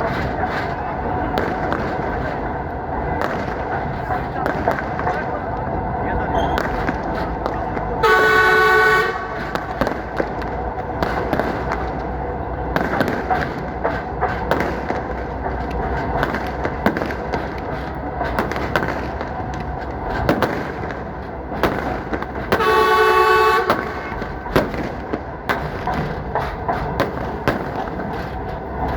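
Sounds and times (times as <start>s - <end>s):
train wheels rattling and clicking: 0.0s - 28.9s
train horn blast: 8.0s - 9.7s, 22.5s - 24.2s.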